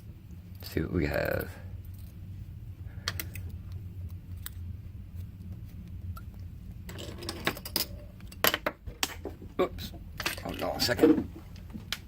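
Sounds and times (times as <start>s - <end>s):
low steady hum: 0.0s - 12.0s
small metal parts clicking and rattling: 1.3s - 2.2s, 10.2s - 11.0s.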